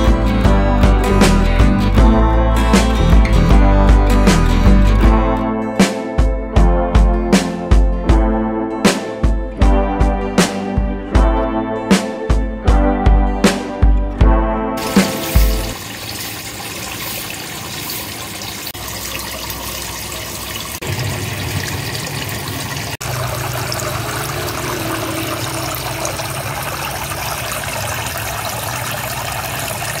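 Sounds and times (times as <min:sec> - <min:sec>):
water splashing into aquarium: 0:14.8 - 0:30.0.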